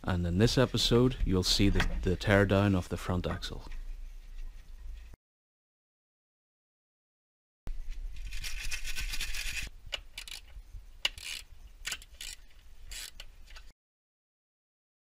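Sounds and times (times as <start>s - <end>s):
ratchet wrench clicking: 10.2s - 13.2s.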